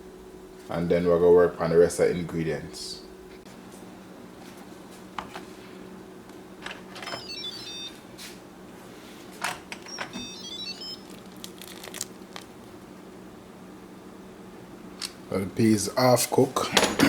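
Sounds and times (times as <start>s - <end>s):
steady low hum: 0.0s - 17.0s
electronic beeping tune: 7.2s - 8.0s, 10.0s - 11.0s.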